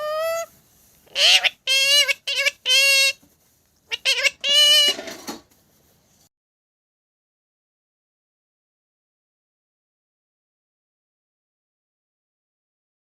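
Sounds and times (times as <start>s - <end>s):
parrot talking: 0.0s - 0.5s, 1.1s - 3.2s, 3.9s - 5.2s.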